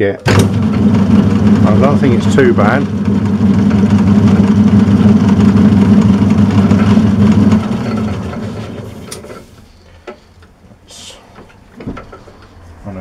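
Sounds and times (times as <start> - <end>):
lathe motor humming: 0.3 - 9.8.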